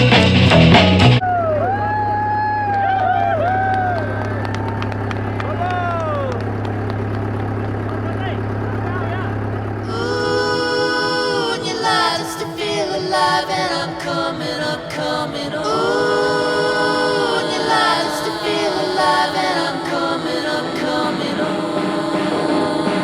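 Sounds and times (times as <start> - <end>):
voices singing long sliding notes: 9.8 - 23.0.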